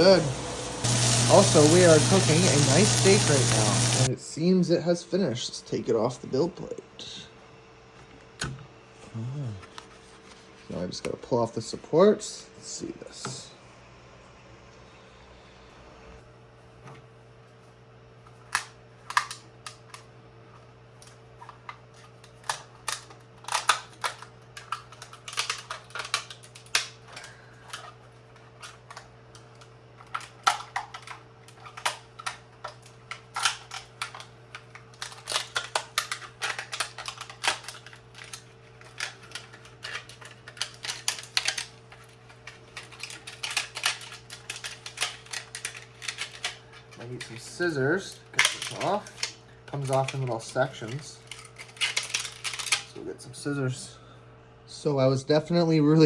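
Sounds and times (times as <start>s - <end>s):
steady low hum: 0.0s - 55.4s
plastic snapping and cracking: 18.5s - 20.0s, 21.0s - 47.4s, 48.3s - 52.9s.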